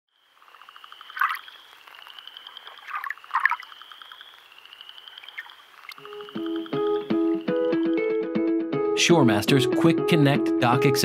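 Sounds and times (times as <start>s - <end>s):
frogs trilling and croaking: 0.1s - 7.9s
plucked acoustic guitar music: 6.0s - 11.0s.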